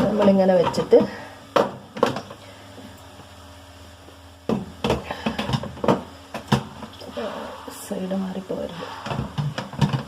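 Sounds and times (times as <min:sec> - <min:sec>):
steady low hum: 0:00.0 - 0:10.0
plastic filter knocking and clicking: 0:09.3 - 0:10.0.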